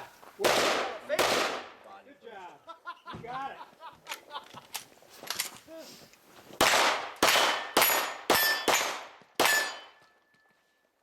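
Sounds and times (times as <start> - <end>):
pistol shots: 0.4 - 1.8, 6.6 - 10.0
steel target ringing: 7.3 - 10.1.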